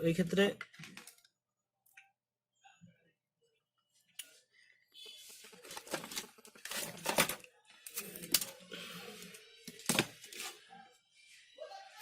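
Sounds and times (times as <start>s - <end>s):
small tools and wires clattering: 5.6s - 8.6s.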